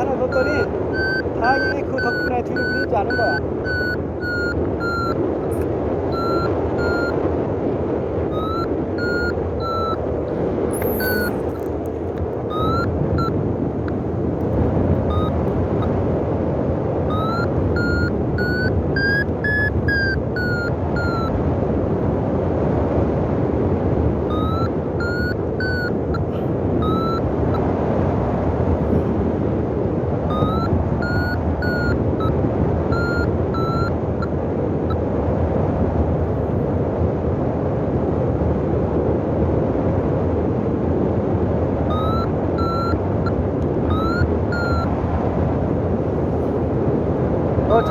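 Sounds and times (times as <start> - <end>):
variometer beeping: 0.0 - 7.5, 8.1 - 16.0, 17.0 - 21.4, 24.2 - 27.7, 30.2 - 35.1, 41.8 - 45.0
wind buffeting microphone: 0.0 - 47.9.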